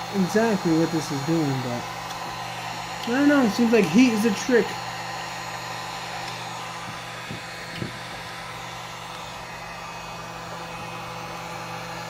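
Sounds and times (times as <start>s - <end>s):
heat gun blowing hot air: 0.0s - 12.0s
light knock: 6.9s - 8.0s.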